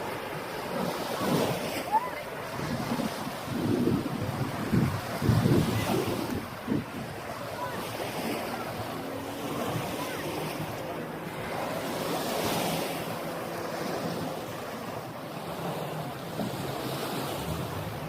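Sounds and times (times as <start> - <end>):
small waves washing onto beach: 0.0 - 18.0
wind across microphone: 2.4 - 10.8.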